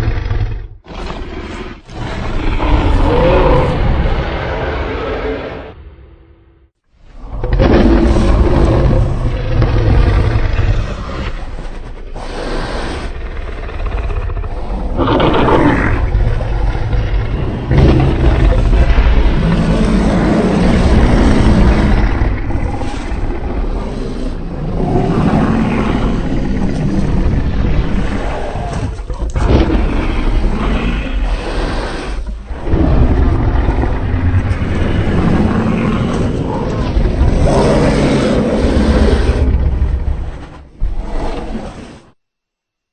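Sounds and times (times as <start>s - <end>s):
deep monster roars and growls: 0.0s - 42.2s.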